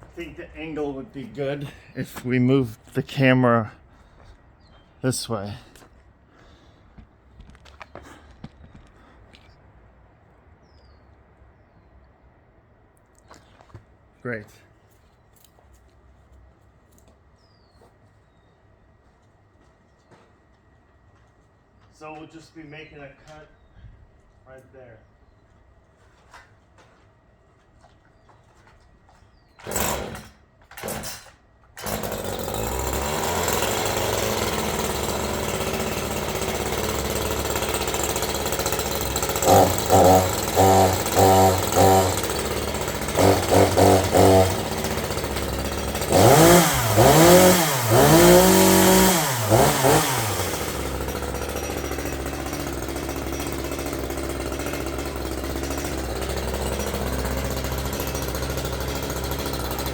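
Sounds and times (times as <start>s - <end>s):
chainsaw engine revving: 29.6s - 59.9s
chainsaw starter cord pulls: 29.6s - 59.9s.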